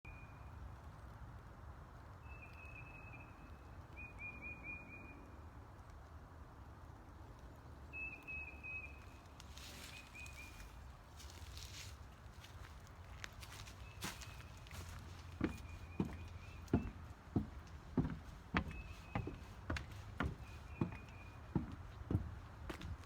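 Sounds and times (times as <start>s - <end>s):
bird chirping: 2.2s - 5.3s, 13.5s - 22.2s
soft knocks or steps: 14.1s - 23.0s.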